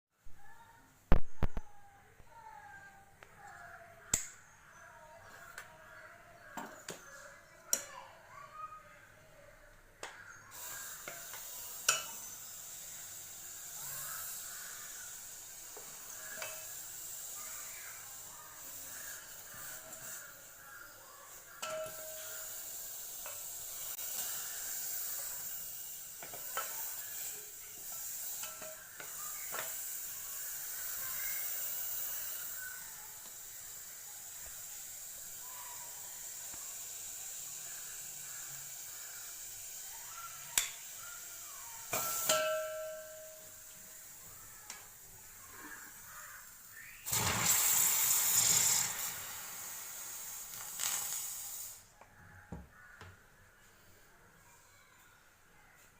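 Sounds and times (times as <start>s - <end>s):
clicks and pops: 1.1s - 1.7s
water heater hiss and sizzle: 2.3s - 53.6s.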